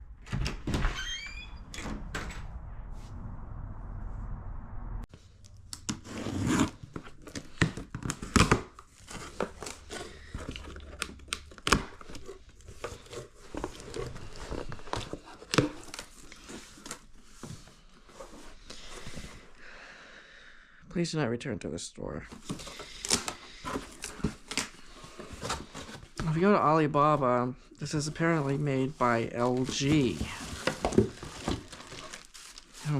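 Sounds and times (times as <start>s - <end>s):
packaging rustling and tearing: 5.7s - 19.4s, 22.3s - 26.6s, 27.9s - 32.9s.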